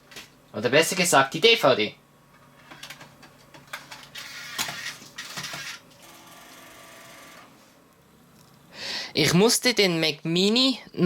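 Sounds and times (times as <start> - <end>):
faint drive hum: 0.0 - 11.0
disc drive clicks and whirr: 2.6 - 7.5.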